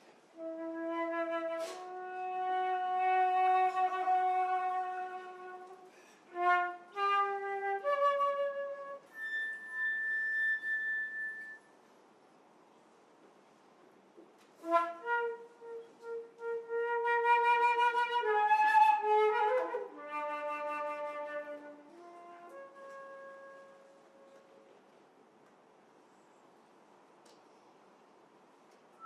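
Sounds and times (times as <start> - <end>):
solo flute playing: 0.3 - 11.8, 14.6 - 24.7.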